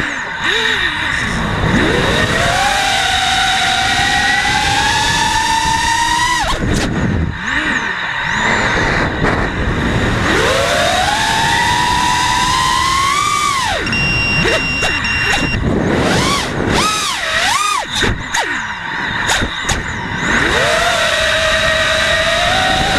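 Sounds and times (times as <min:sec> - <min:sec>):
quadcopter motors whining: 0:00.0 - 0:22.9
steady rushing noise: 0:00.0 - 0:22.9.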